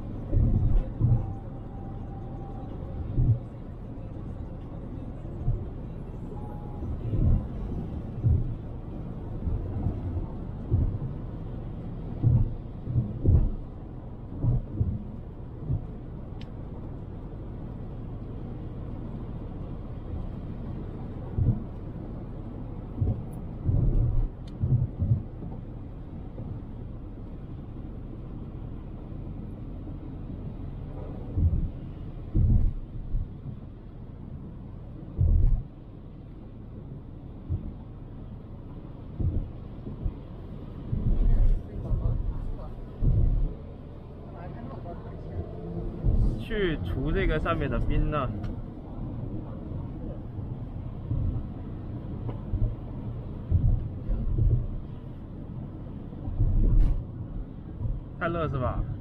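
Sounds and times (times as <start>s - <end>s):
road and wind rumble: 0.0s - 59.0s
short low thumps: 8.1s - 8.7s, 9.4s - 11.2s, 12.1s - 16.0s, 21.3s - 21.7s, 22.9s - 25.6s, 31.3s - 33.6s, 35.1s - 35.7s, 37.4s - 37.8s, 39.1s - 40.2s, 40.8s - 43.9s, 45.8s - 46.5s, 51.0s - 52.8s, 53.4s - 54.9s, 56.2s - 58.2s.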